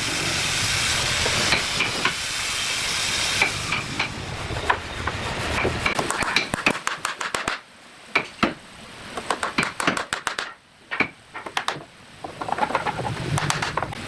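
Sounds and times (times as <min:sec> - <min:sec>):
sharp taps and clicks: 0:05.9 - 0:07.6, 0:09.2 - 0:11.9, 0:12.7 - 0:14.0.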